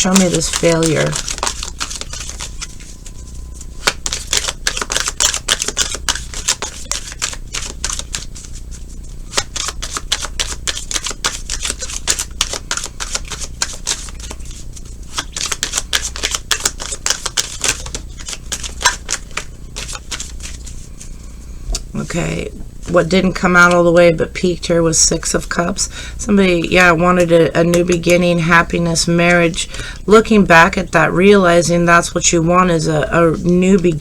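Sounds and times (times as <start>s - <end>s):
cards being shuffled: 0.0s - 20.8s.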